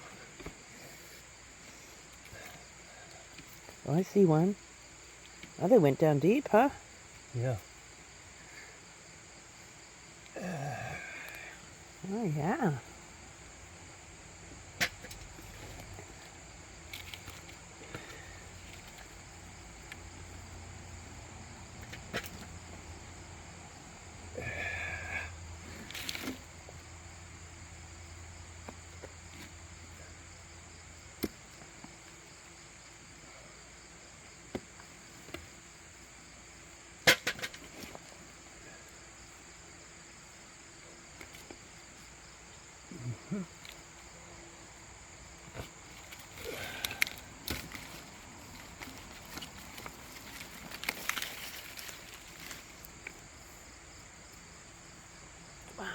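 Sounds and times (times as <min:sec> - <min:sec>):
crickets trilling: 0:00.0 - 0:55.9
knocks and scrapes of digging: 0:25.7 - 0:26.6, 0:37.0 - 0:38.3, 0:45.4 - 0:53.8.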